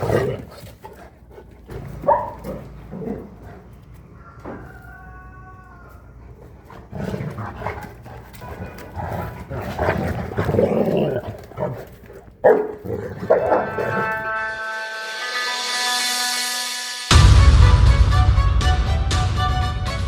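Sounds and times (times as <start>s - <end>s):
dog growling: 0.0s - 4.9s, 5.7s - 14.2s
dog barking: 2.0s - 3.4s, 12.4s - 14.1s.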